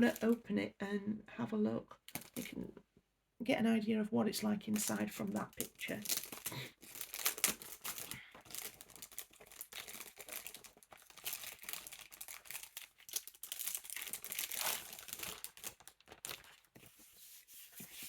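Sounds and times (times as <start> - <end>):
plastic wrapping crinkling: 0.0 - 0.4, 4.8 - 17.0.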